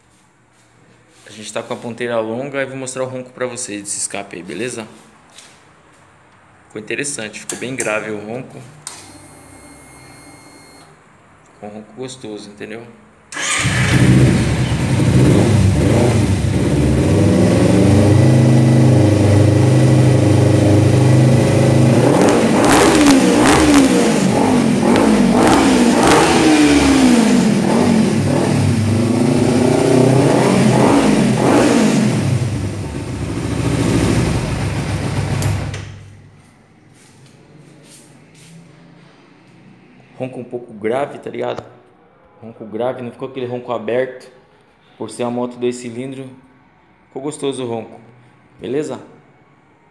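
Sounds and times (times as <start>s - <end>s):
motorcycle engine revving: 13.4s - 36.0s.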